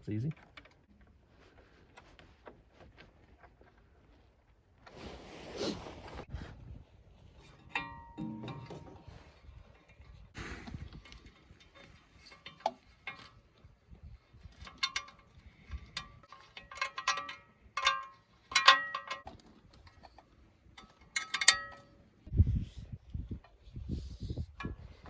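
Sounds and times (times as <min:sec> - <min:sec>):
metal tools clinking on metal: 0:07.5 - 0:10.2, 0:14.6 - 0:19.3, 0:19.9 - 0:22.3.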